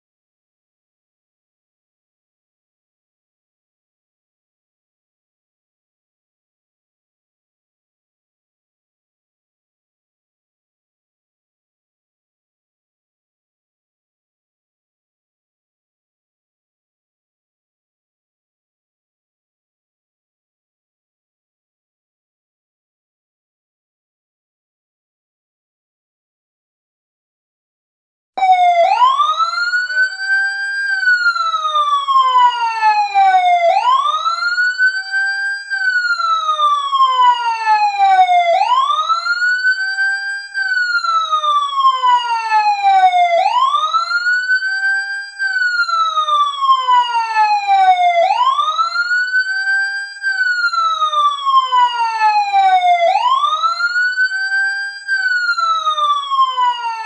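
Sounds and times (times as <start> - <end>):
fire truck siren wailing: 28.4 - 57.0.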